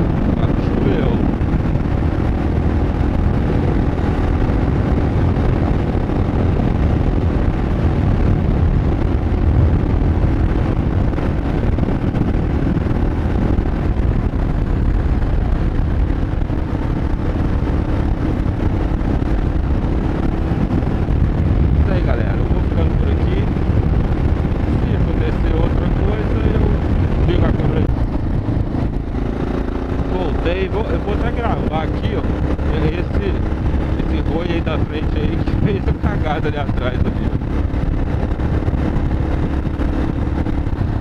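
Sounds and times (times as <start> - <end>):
motorcycle engine cruising: 0.0 - 41.0
wind rumble on microphone: 0.0 - 41.0.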